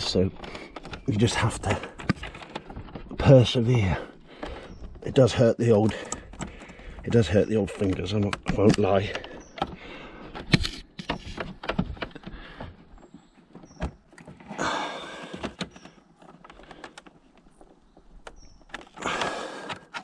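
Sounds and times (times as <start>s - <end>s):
plastic bulb holder clicking and creaking: 0.0s - 3.0s, 4.4s - 12.4s, 15.2s - 20.0s.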